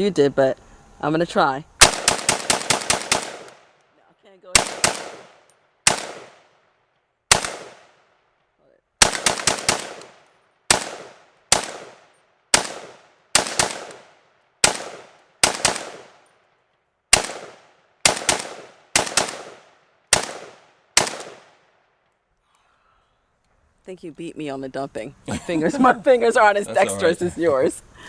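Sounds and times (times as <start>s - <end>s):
rifle shots: 1.8s - 3.8s, 4.5s - 6.6s, 7.3s - 8.2s, 9.0s - 16.4s, 17.1s - 21.8s.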